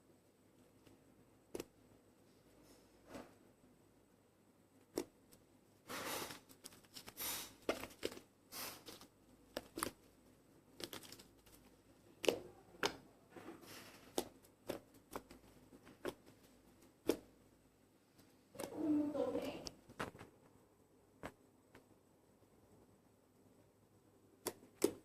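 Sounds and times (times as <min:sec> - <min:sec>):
slime squelching: 0:04.8 - 0:20.0
sticky clicks: 0:24.4 - 0:25.0.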